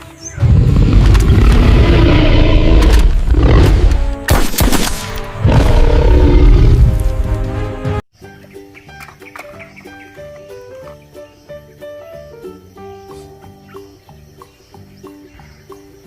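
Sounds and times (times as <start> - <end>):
gunfire-like cracks: 4.3 - 5.4
quiet melodic music: 7.0 - 16.0.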